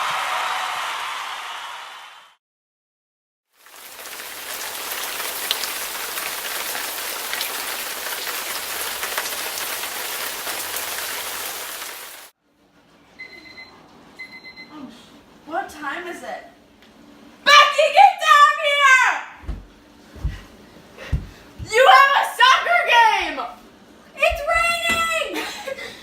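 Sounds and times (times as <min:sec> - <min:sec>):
heavy rain falling: 0:03.6 - 0:12.3.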